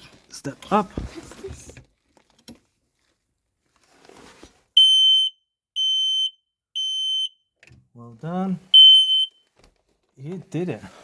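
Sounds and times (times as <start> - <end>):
smoke alarm beeping: 4.8 - 7.4, 8.7 - 9.4.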